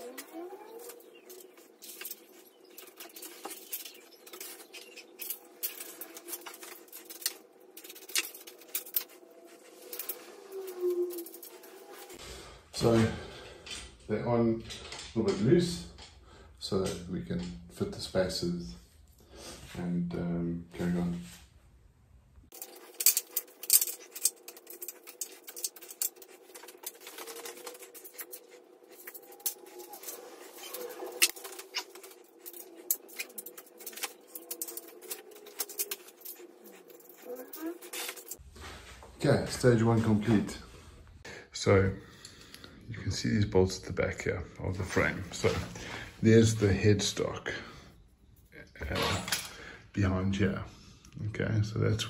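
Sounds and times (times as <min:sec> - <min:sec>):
bolts and nuts clinking: 0:22.5 - 0:38.4.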